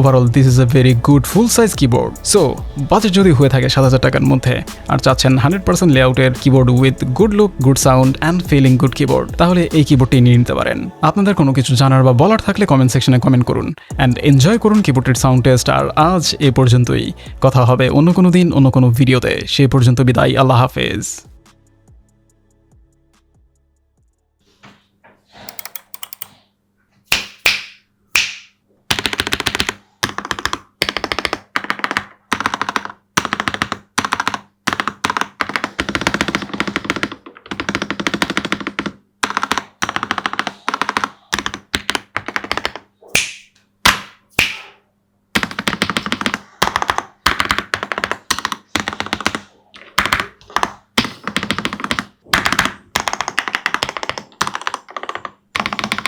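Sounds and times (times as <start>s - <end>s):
mechanical keyboard typing: 25.4s - 26.4s, 28.9s - 42.8s, 45.4s - 56.0s.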